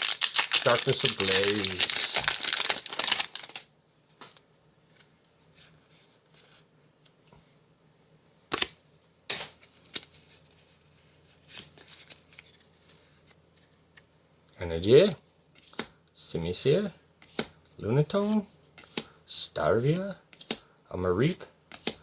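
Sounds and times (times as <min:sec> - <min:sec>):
trading cards rustling: 0:00.0 - 0:06.4.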